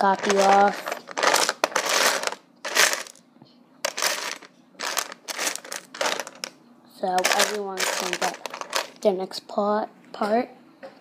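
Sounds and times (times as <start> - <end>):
plastic bricks rattling: 0.0 - 3.2, 3.9 - 6.5, 7.1 - 9.1.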